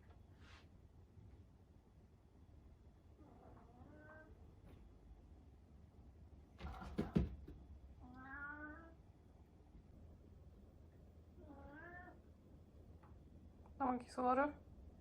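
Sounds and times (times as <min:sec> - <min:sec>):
cat meowing: 0:08.0 - 0:09.0, 0:11.4 - 0:12.2.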